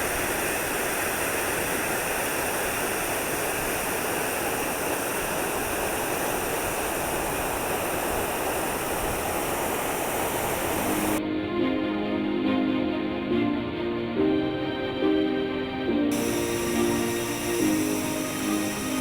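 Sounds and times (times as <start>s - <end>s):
waterfall roaring: 0.0s - 11.2s, 16.1s - 19.0s.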